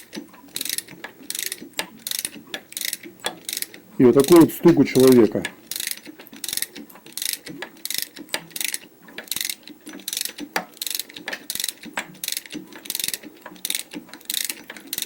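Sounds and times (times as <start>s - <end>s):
wrench ratcheting clicks: 0.0s - 3.8s, 5.7s - 15.0s
engine camshaft part clacking: 0.0s - 15.0s.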